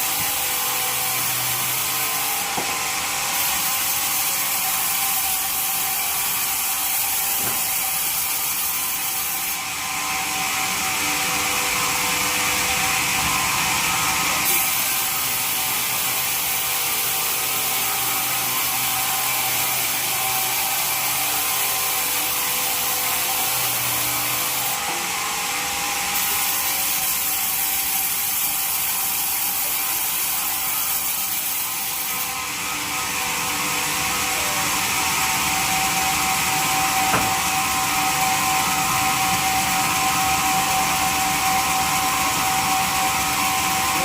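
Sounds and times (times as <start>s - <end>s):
bandsaw machinery clattering: 0.0s - 9.6s, 34.1s - 44.0s.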